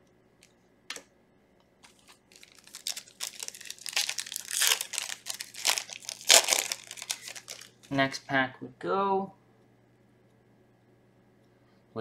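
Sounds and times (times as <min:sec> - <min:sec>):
foil wrapper crinkling: 0:01.8 - 0:08.0.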